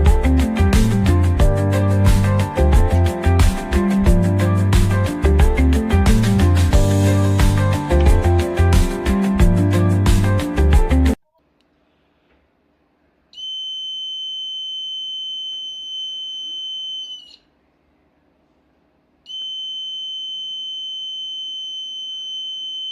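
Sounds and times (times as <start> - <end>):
high-pitched alarm buzzer: 13.4 - 17.3, 19.3 - 22.9.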